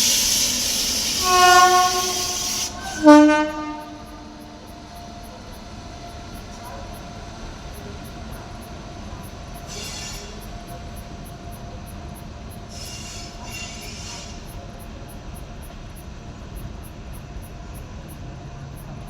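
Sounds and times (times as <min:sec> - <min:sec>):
high-pitched wheel squeals: 0:00.0 - 0:04.6, 0:09.7 - 0:10.5, 0:12.7 - 0:14.6
freight wagons rumbling: 0:00.0 - 0:19.0.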